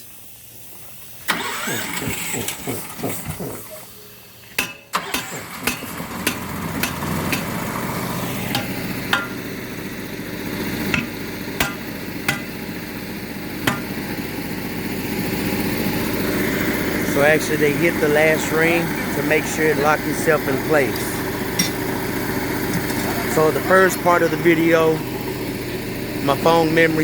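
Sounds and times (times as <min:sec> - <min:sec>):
engine running: 0:00.1 - 0:27.0
hammer striking steel ring: 0:08.6 - 0:09.4, 0:21.6 - 0:21.8.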